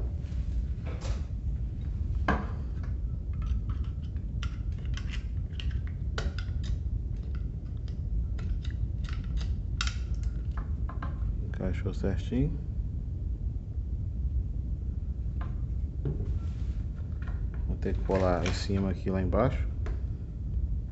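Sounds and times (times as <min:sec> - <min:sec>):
steady low hum: 0:00.0 - 0:20.9
screwdriver scraping metal: 0:03.4 - 0:06.7.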